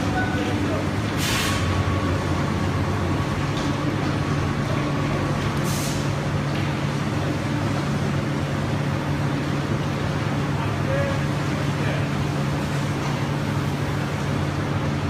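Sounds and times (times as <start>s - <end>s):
furnace machinery hum: 0.0s - 15.0s
brief hiss: 1.2s - 1.7s.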